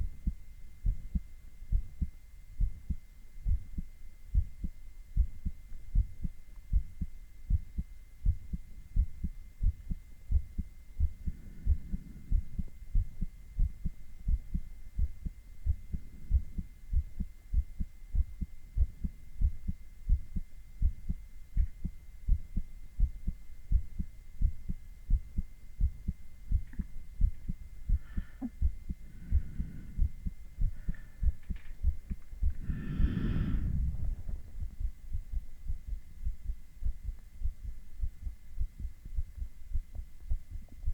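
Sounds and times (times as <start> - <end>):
heartbeat through stethoscope: 0.0 - 40.9
soft noise: 23.0 - 40.9.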